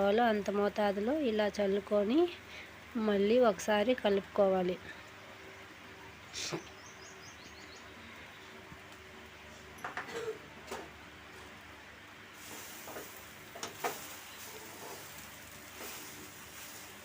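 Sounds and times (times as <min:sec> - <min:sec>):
ladle stirring puffed rice: 0:12.4 - 0:17.0.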